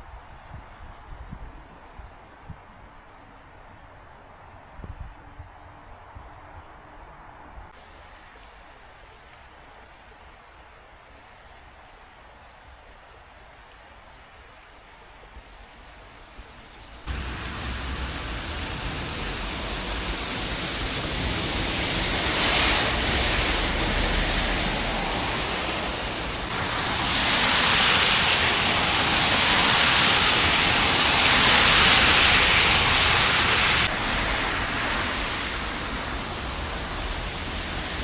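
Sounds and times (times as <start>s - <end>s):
heavy rain falling: 16.8s - 38.0s.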